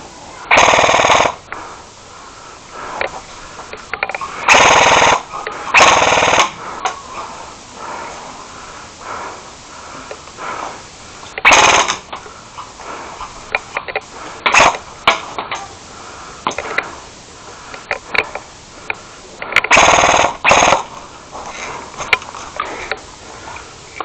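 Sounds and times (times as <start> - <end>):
airsoft gun firing bursts: 0.5 - 1.4, 4.4 - 6.6, 11.4 - 12.1, 14.4 - 15.2, 19.7 - 21.0
faint clicks: 10.0 - 10.4, 11.2 - 15.7, 16.4 - 19.8.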